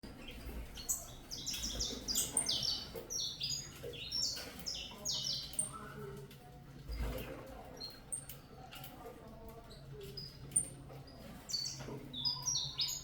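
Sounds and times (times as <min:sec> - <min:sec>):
finch chicks chirping: 0:00.1 - 0:05.8, 0:09.8 - 0:13.0.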